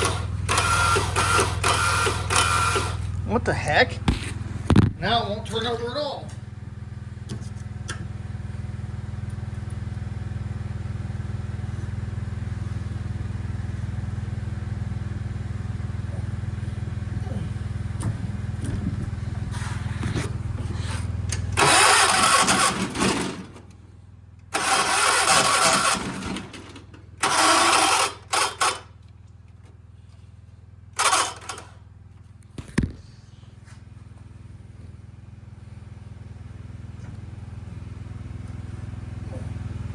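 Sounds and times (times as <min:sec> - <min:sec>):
electric starter grinding: 0:00.0 - 0:03.5, 0:17.8 - 0:29.8, 0:30.9 - 0:31.9.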